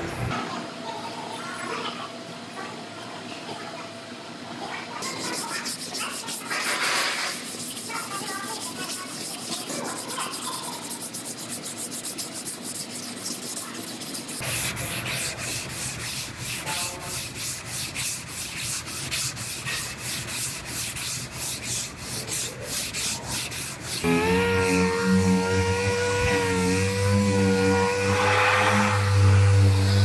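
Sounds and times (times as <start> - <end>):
sandpaper strokes: 5.0 - 30.0
power tool whine: 24.0 - 30.0.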